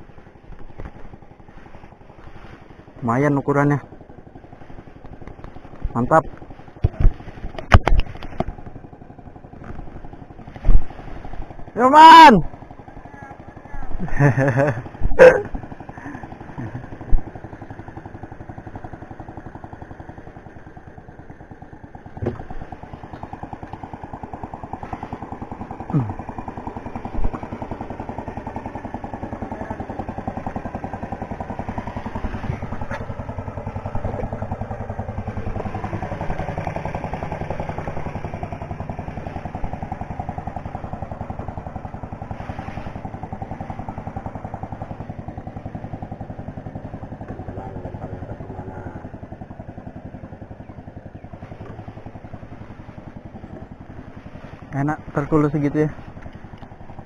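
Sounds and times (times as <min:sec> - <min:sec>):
small boat engine running: 0:00.0 - 0:57.0.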